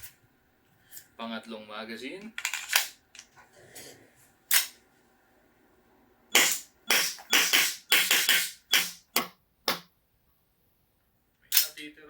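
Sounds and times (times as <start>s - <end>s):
airsoft pistol shots: 6.3s - 9.8s.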